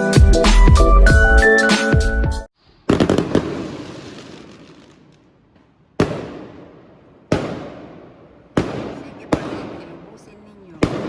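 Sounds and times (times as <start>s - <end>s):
fireworks bangs: 2.6s - 11.0s
fireworks crackling: 2.6s - 11.0s.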